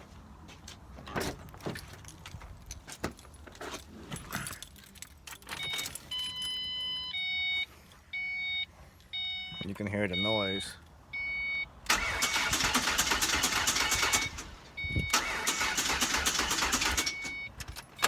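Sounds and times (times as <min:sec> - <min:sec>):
car keys jangling: 0:01.5 - 0:07.1
car warning chime: 0:05.6 - 0:12.5.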